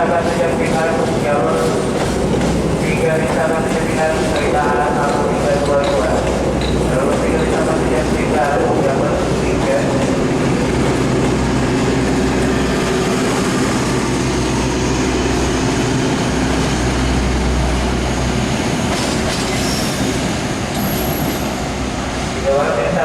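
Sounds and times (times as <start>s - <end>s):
train wheels on rails: 0.0s - 23.0s
high wheel squeals: 19.4s - 21.6s.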